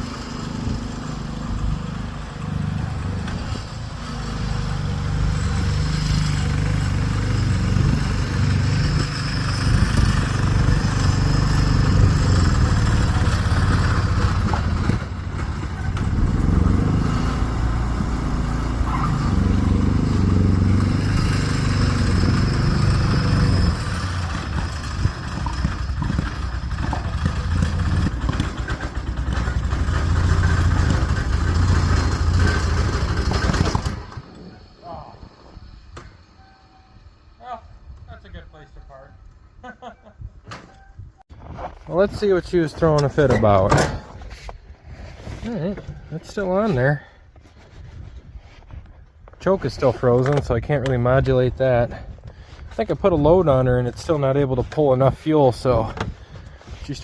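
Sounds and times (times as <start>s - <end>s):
lawn tractor engine surging: 0.0s - 36.0s.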